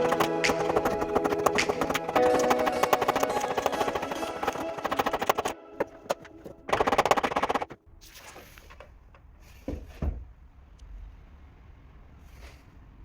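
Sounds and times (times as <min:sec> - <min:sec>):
background music: 0:00.0 - 0:07.6.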